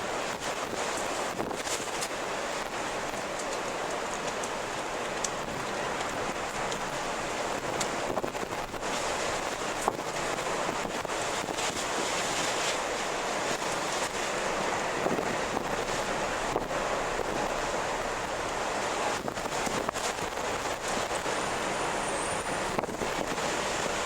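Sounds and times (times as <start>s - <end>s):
strong wind blowing: 4.8s - 24.0s.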